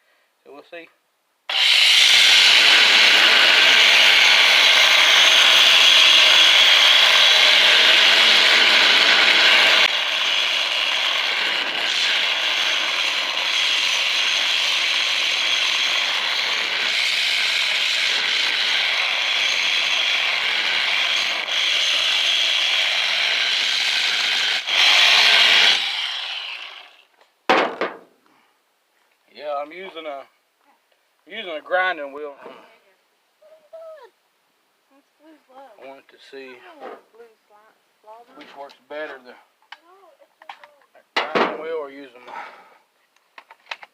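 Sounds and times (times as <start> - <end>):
angle grinder cutting metal: 1.5 - 27.1.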